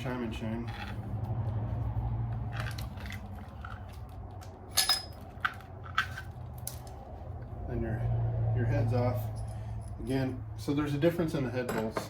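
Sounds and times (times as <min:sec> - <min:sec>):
metal engine parts clinking: 0:00.4 - 0:01.1, 0:02.5 - 0:07.0, 0:09.0 - 0:10.4, 0:11.3 - 0:12.0.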